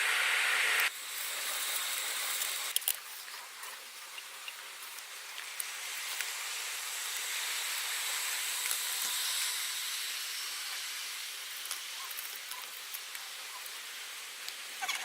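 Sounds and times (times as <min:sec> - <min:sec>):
aerosol spray hissing: 0:00.0 - 0:15.0
faint clicks: 0:01.7 - 0:06.4, 0:11.5 - 0:13.8.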